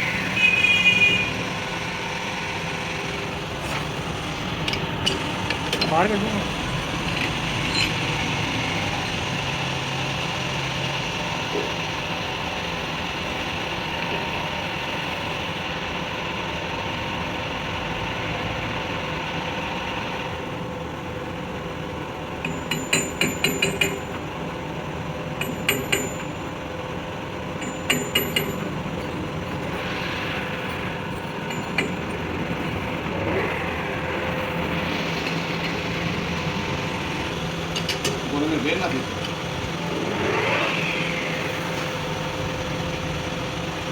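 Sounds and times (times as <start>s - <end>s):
mechanical hum: 0.0s - 43.9s
metal-on-metal taps: 22.4s - 24.0s, 27.6s - 28.7s, 37.7s - 38.2s.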